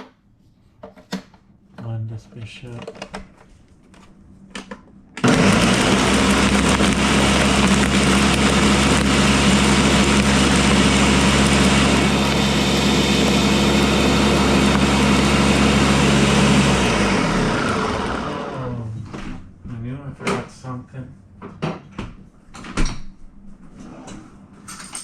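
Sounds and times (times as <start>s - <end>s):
blender motor running: 5.2s - 18.9s.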